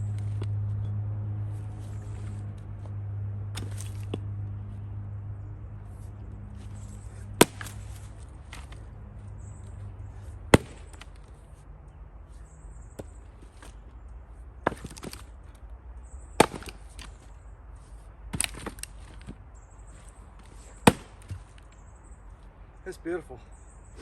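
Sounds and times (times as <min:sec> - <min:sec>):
axe chopping wood: 0:03.4 - 0:04.3, 0:06.6 - 0:08.9, 0:10.4 - 0:11.4, 0:14.6 - 0:15.3, 0:16.4 - 0:17.3, 0:18.3 - 0:19.4, 0:20.8 - 0:21.6.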